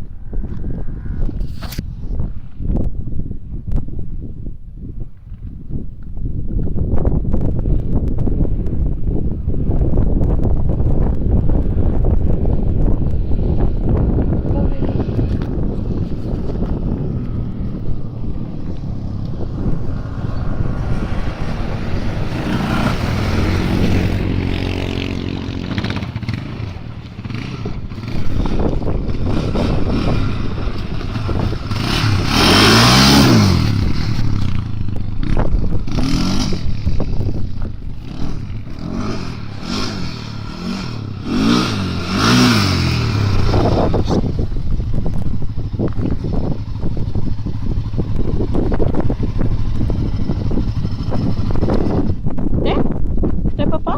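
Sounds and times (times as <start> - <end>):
atv engine revving: 10.2 - 52.8.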